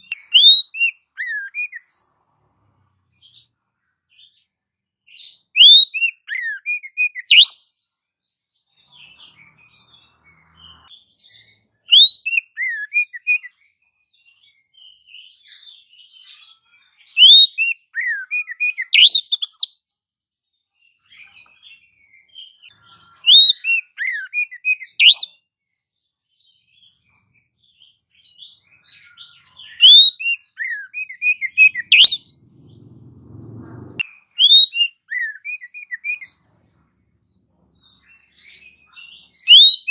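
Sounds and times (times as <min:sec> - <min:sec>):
songbird sharp chirps: 0:00.0 - 0:19.9, 0:20.9 - 0:25.3, 0:26.2 - 0:39.9
soft bird twittering: 0:00.0 - 0:39.9
low rumble: 0:31.7 - 0:34.0.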